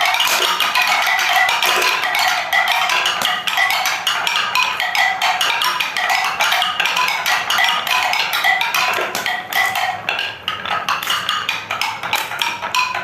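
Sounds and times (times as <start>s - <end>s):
marbles clattering on wooden track: 0.1s - 4.0s, 8.2s - 10.3s.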